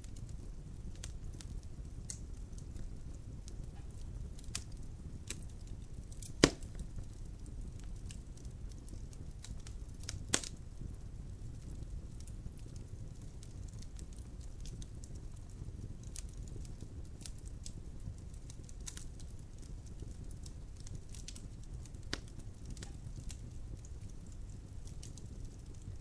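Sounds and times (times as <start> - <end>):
wood fire crackling: 0.0 - 26.0
loud pop of fire: 6.2 - 7.0, 9.5 - 10.6.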